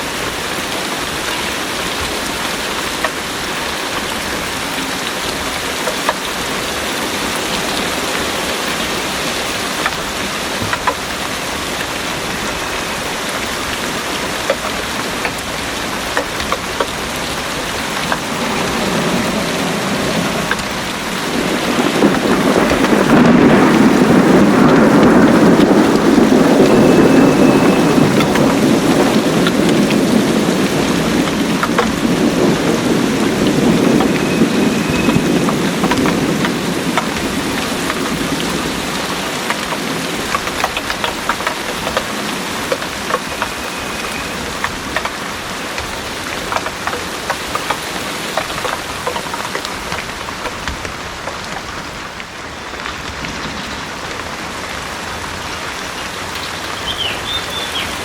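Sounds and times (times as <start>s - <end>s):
heavy rain pouring: 0.0s - 58.0s
raindrops ticking: 0.0s - 58.0s
low rumble of thunder: 6.5s - 46.8s.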